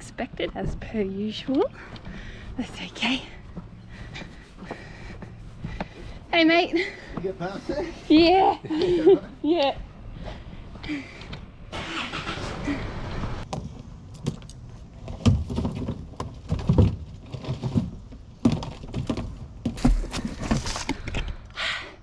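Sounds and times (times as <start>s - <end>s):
rubbish knocking and thumping: 15.0s - 21.2s
rustling scrape: 19.8s - 21.1s.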